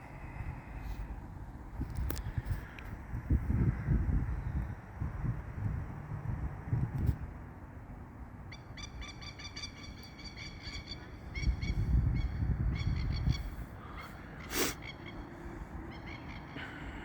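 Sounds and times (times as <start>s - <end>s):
wind rumbling on microphone: 0.0s - 8.2s, 10.4s - 17.0s
bird calling harsh repeated notes: 8.5s - 15.3s.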